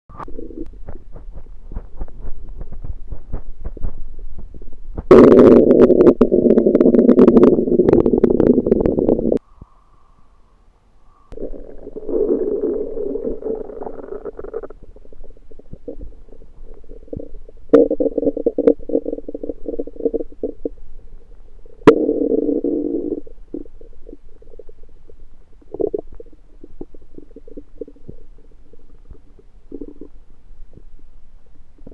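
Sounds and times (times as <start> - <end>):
stomach gurgling and rumbling: 0.1 - 9.7, 11.3 - 31.9.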